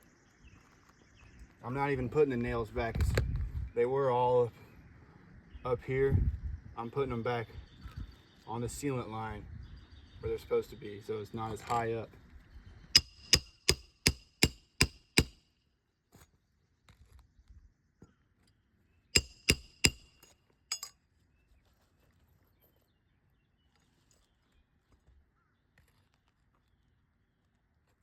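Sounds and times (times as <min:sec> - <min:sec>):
hammer striking metal: 0:13.0 - 0:15.4, 0:19.2 - 0:20.9.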